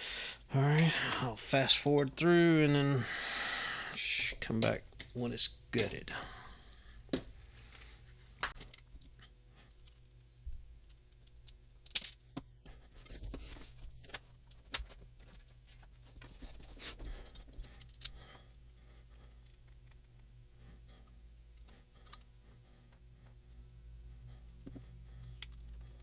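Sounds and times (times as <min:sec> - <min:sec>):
small metallic clicks and clinks: 0:17.2 - 0:18.6.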